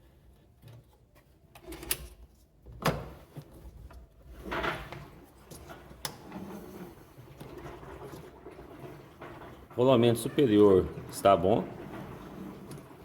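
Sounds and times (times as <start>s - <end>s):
scraping rub: 4.2s - 13.0s.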